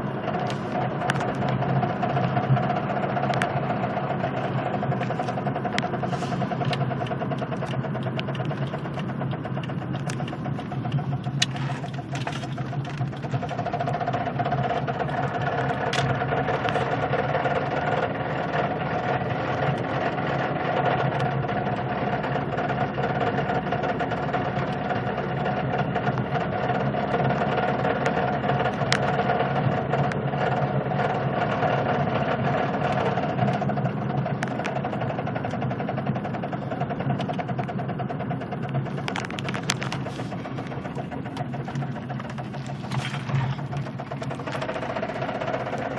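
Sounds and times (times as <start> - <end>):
car engine driving slowly: 0.0 - 45.9.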